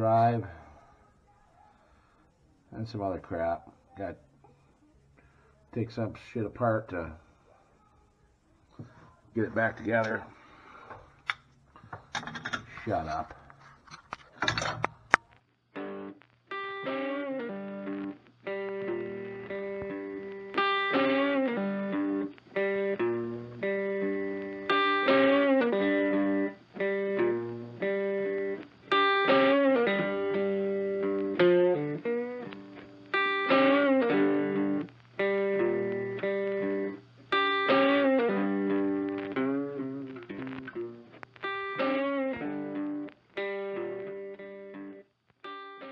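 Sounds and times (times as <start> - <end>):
guitar playing chords: 15.8 - 45.9.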